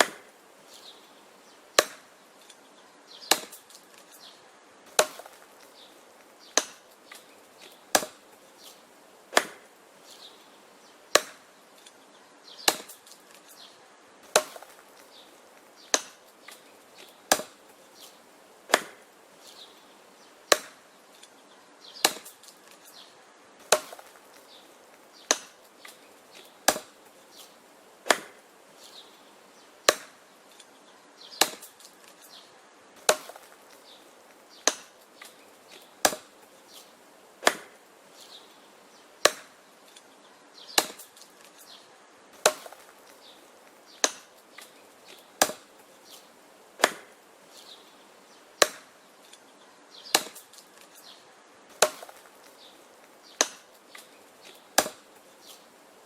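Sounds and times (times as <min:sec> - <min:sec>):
axe chopping wood: 0:00.0 - 0:00.3, 0:01.8 - 0:02.5, 0:03.2 - 0:04.1, 0:04.9 - 0:08.3, 0:09.3 - 0:09.7, 0:11.1 - 0:11.5, 0:12.6 - 0:13.5, 0:14.2 - 0:17.7, 0:18.7 - 0:19.1, 0:20.5 - 0:20.9, 0:22.0 - 0:23.0, 0:23.6 - 0:28.4, 0:29.8 - 0:30.3, 0:31.3 - 0:32.3, 0:33.0 - 0:36.8, 0:37.4 - 0:37.8, 0:39.2 - 0:40.0, 0:40.7 - 0:41.6, 0:42.4 - 0:45.8, 0:46.8 - 0:47.2, 0:48.6 - 0:48.9, 0:50.1 - 0:51.0, 0:51.7 - 0:52.6, 0:53.3 - 0:55.6.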